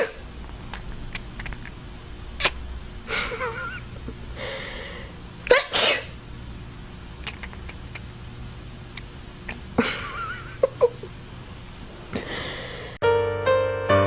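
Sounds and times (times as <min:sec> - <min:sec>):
cat sneezing: 0:05.5 - 0:06.2
wavering high tone: 0:13.0 - 0:14.0.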